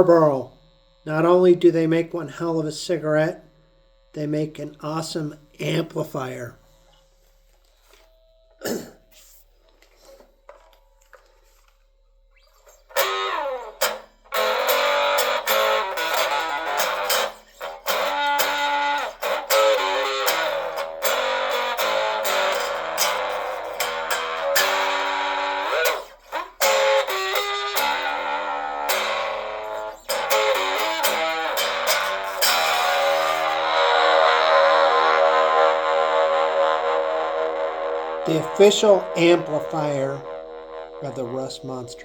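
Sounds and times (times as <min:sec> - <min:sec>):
electric guitar chords and riffs: 0:12.4 - 0:42.0.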